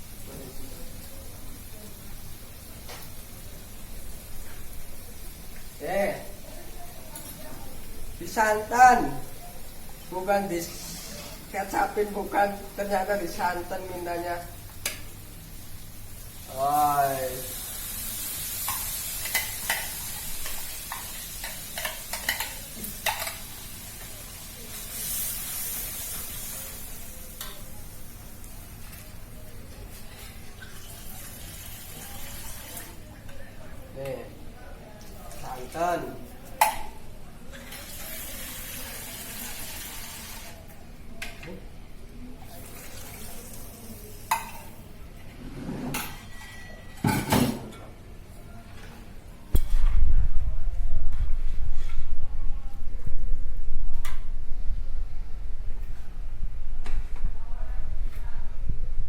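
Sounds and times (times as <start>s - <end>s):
fish sizzling in a pan: 0.0s - 33.1s, 37.6s - 40.7s, 42.4s - 44.9s
cookware and utensils clinking: 18.6s - 24.2s, 36.5s - 40.5s, 44.1s - 48.0s.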